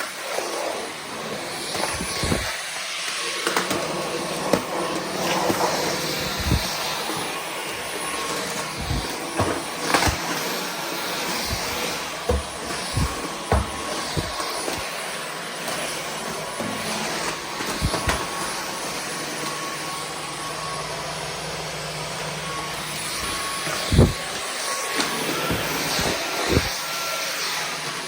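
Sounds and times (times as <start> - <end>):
stick vacuum running: 0.1 - 28.0.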